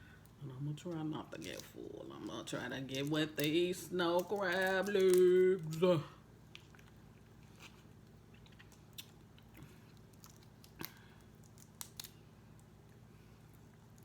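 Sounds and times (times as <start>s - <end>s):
crab shells cracking: 3.0s - 5.8s, 6.5s - 14.0s.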